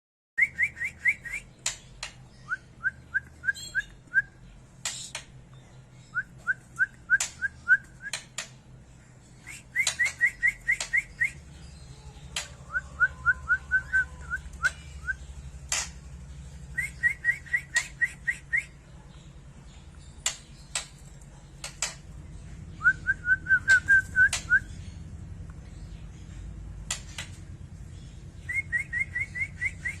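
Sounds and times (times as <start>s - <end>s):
songbird whistled notes: 2.3s - 4.4s, 9.4s - 11.4s, 28.4s - 30.0s.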